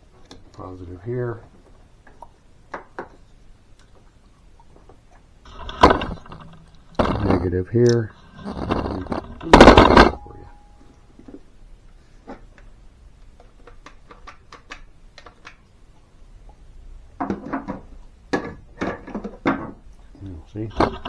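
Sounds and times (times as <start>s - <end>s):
clicks and knocks of metal and plastic: 1.4s - 4.1s, 4.7s - 10.6s, 13.3s - 15.6s, 17.2s - 21.0s.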